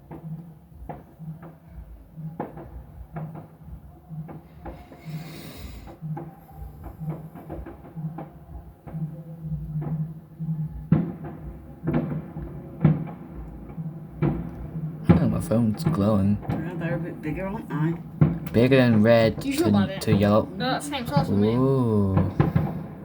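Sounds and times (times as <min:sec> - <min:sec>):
distant fireworks bangs: 0:00.0 - 0:23.0
fireworks crackling hiss: 0:04.4 - 0:07.9, 0:12.8 - 0:23.0.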